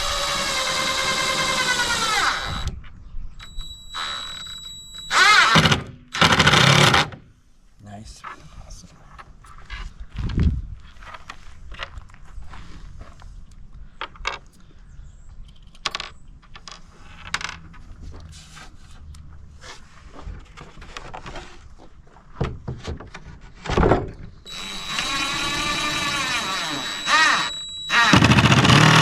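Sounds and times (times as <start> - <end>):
cordless driver motor whine: 0.0 - 2.8, 3.4 - 7.1, 24.5 - 29.0
screws and boards clicking: 3.5 - 7.2, 24.5 - 29.0.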